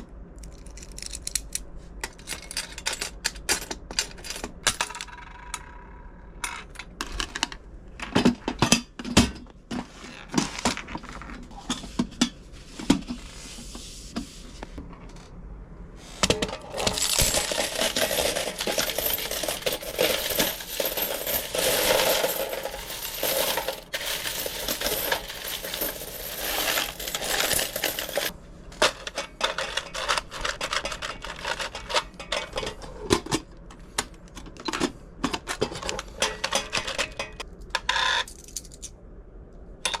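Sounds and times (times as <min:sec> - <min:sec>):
small hard objects clinking: 0:16.6 - 0:28.4.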